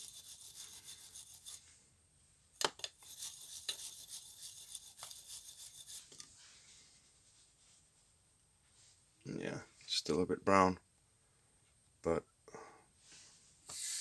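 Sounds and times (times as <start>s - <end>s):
scratchy rubbing on metal: 0.0s - 1.7s, 3.0s - 6.3s.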